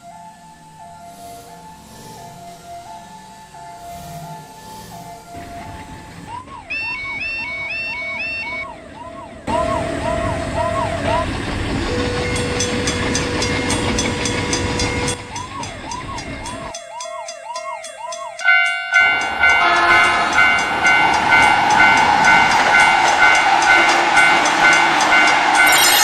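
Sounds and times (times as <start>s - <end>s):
passing train rumble: 0.0s - 16.7s
train rapid clicking: 3.9s - 25.6s
crossing bell ringing: 11.8s - 26.0s
warbling alarm chirping: 25.6s - 26.0s.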